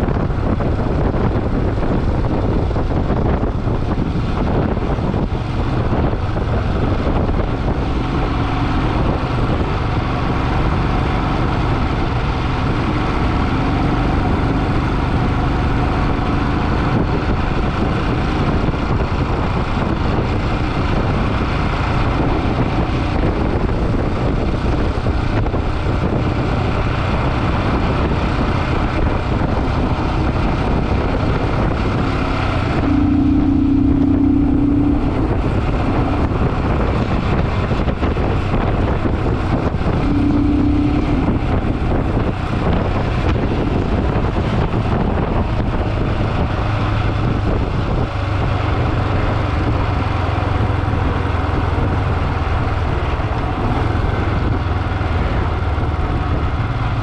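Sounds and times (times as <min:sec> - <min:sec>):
motorcycle engine running: 0:00.0 - 0:57.0
wind rushing over microphone: 0:00.0 - 0:57.0
loud steady low tone: 0:26.6 - 0:47.8.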